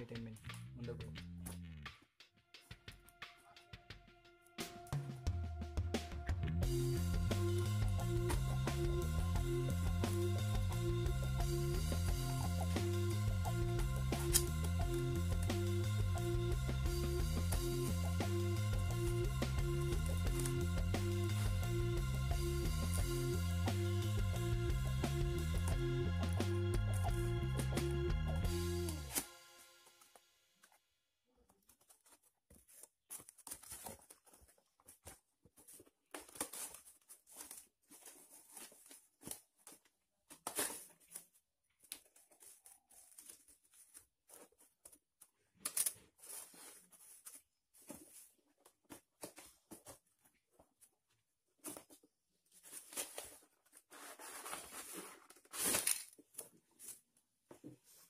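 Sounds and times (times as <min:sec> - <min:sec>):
packaging rustling and crinkling: 0:31.6 - 0:58.0
packaging ripping: 0:52.7 - 0:56.4.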